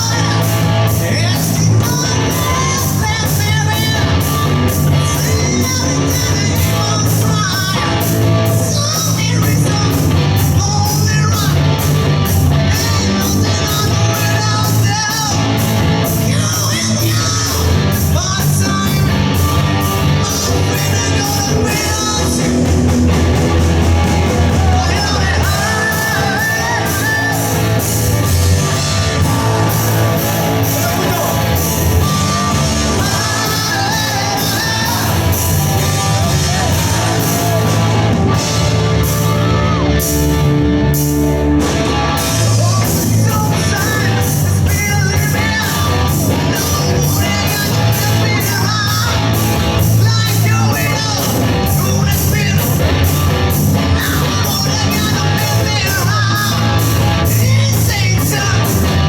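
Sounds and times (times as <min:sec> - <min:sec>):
person singing: 0:00.0 - 0:40.6, 0:42.2 - 0:59.0
bass guitar: 0:00.0 - 0:59.0
electric guitar: 0:00.0 - 0:59.0
steady drum beat: 0:17.0 - 0:59.0.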